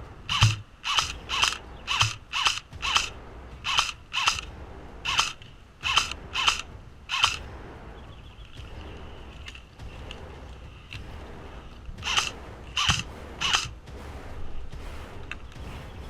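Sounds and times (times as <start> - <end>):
gearbox motor whir: 0.0 - 7.6, 8.4 - 13.8
airsoft gun single shots: 0.3 - 3.1, 3.7 - 4.5, 5.1 - 7.4.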